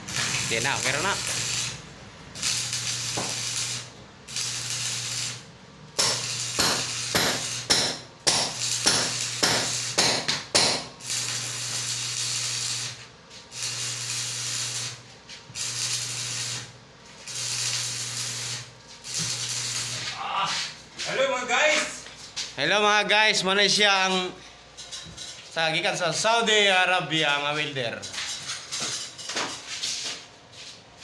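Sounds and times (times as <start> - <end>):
welding arc crackling and hissing: 0.0 - 22.3
steady electrical hum: 0.0 - 31.0.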